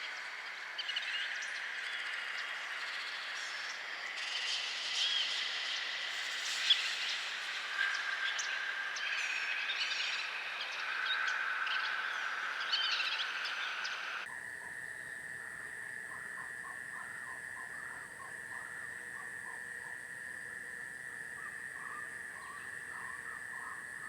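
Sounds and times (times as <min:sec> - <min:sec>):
insect drone: 0:00.0 - 0:24.0
birds chirping: 0:12.6 - 0:24.0.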